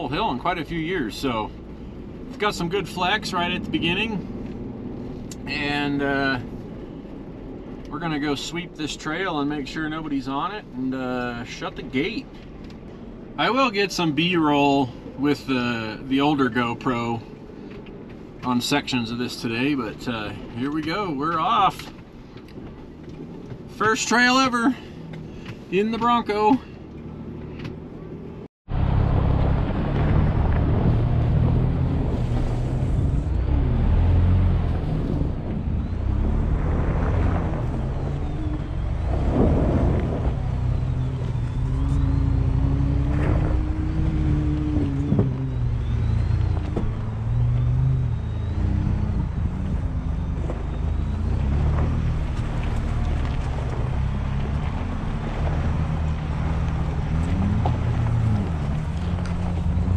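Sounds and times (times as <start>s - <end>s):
vehicle engine and tyres rumbling: 0.0s - 59.9s
wavering engine tone: 28.7s - 59.9s.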